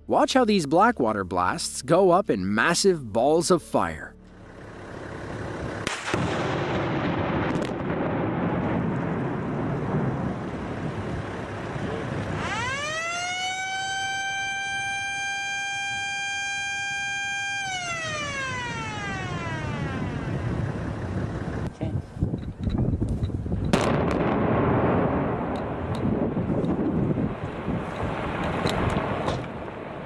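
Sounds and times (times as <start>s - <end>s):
blast crack and rumble: 5.1s - 12.7s, 17.9s - 30.0s
warning siren wailing: 11.9s - 21.7s.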